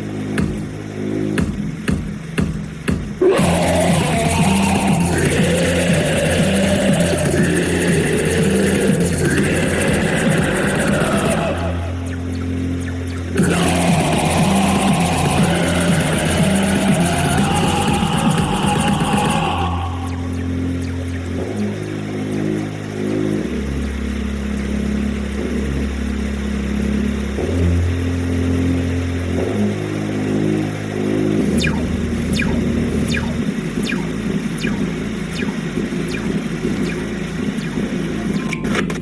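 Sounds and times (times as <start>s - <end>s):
low synth drones: 0.0s - 39.0s
high falling sweeps: 3.2s - 22.8s, 31.4s - 38.5s
gritty noise rumble: 3.2s - 39.0s.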